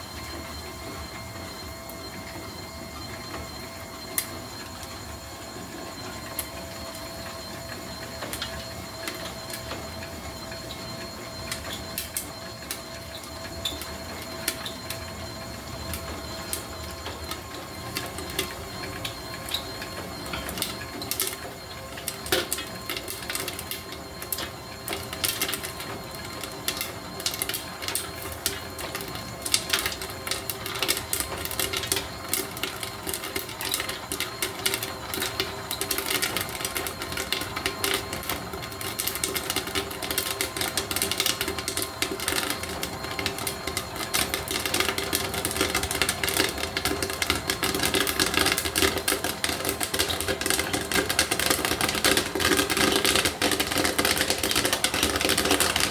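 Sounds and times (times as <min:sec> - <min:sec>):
popcorn clicking and clattering: 0:11.4 - 0:15.0, 0:15.9 - 0:55.9.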